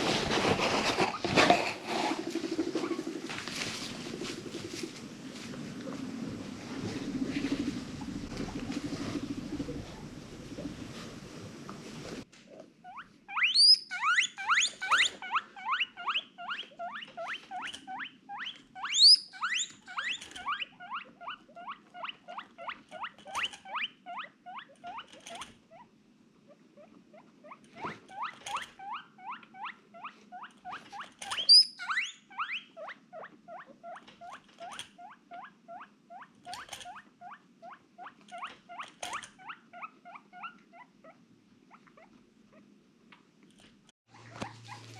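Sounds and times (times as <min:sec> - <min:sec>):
guinea pig high squeals: 0:12.8 - 0:25.9, 0:26.8 - 0:42.7
guinea pig squeaking: 0:12.8 - 0:42.7, 0:44.1 - 0:44.9.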